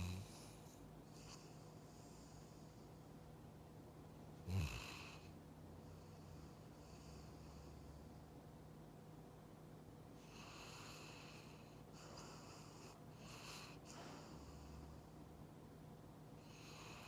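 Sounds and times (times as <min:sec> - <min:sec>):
dog snoring: 0:00.0 - 0:03.0, 0:04.4 - 0:08.2, 0:10.2 - 0:15.2, 0:16.4 - 0:17.0.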